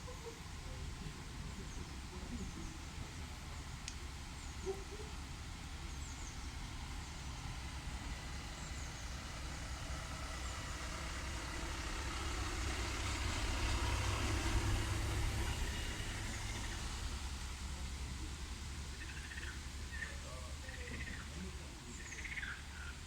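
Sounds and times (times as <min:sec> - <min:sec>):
steady rain falling: 0:00.0 - 0:23.0
faint high bird chirps: 0:18.9 - 0:23.0.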